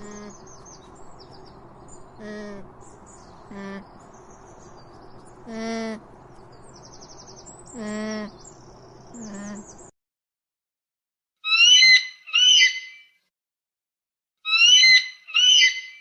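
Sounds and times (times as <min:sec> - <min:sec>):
birds chirping: 0:00.0 - 0:09.9
animal crying: 0:14.5 - 0:15.8.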